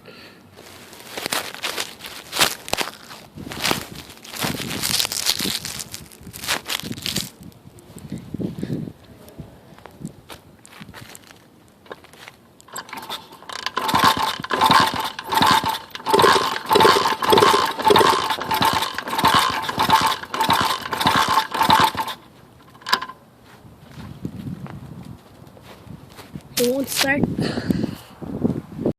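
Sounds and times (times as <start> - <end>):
electric starter cranking engine: 12.7 - 23.2.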